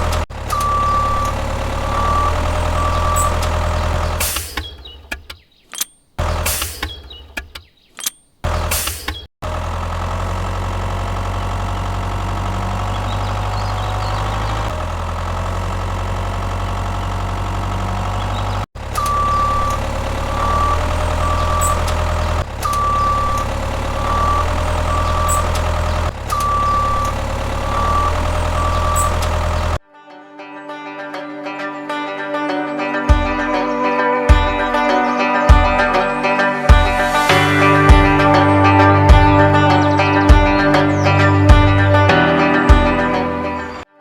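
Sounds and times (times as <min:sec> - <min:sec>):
heavy vehicle engine running: 0:00.0 - 0:05.2, 0:06.2 - 0:07.5, 0:08.4 - 0:29.8, 0:35.6 - 0:43.9
high warning beeps: 0:00.5 - 0:03.5, 0:19.0 - 0:29.7.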